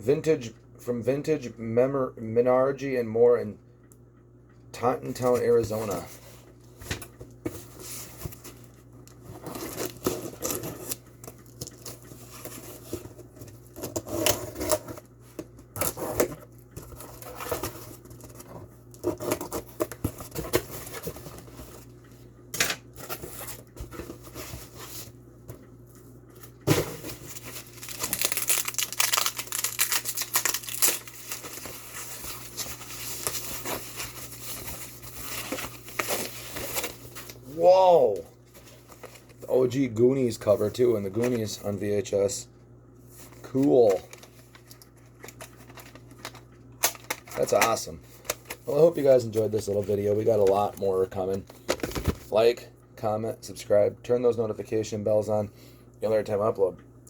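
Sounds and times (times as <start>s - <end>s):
packing material crinkling: 7.6s - 14.9s, 26.7s - 37.5s
tape and cardboard tearing: 27.6s - 34.6s.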